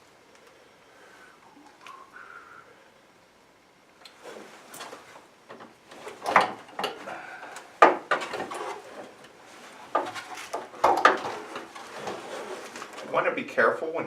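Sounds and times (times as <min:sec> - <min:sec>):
rustling hose: 0:04.0 - 0:13.4
knocks and clunks: 0:04.8 - 0:13.1.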